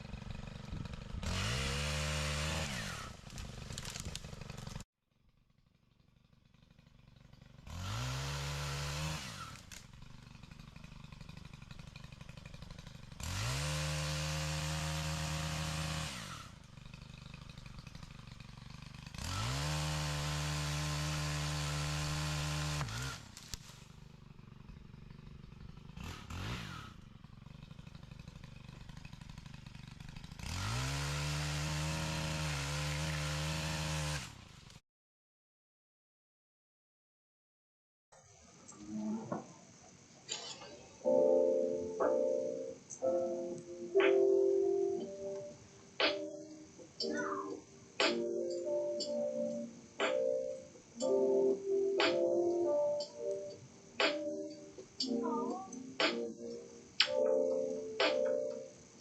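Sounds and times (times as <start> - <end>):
chainsaw revving: 0.0 - 4.8, 5.6 - 34.8, 43.9 - 50.4.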